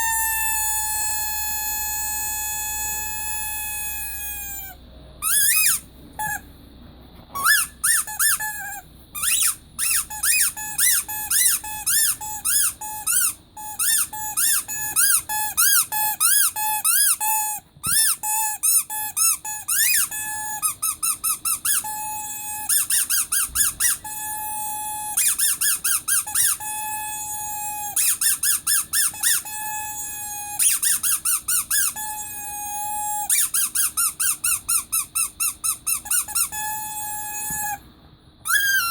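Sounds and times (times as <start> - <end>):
rubber squeaky toy squeaking: 0.0 - 6.5, 7.3 - 37.8, 38.4 - 38.9.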